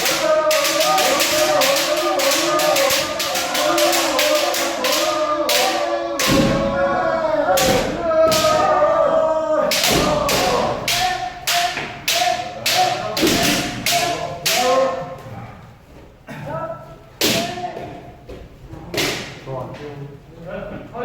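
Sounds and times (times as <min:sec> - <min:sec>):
people shouting: 0:00.0 - 0:15.5, 0:17.2 - 0:18.1.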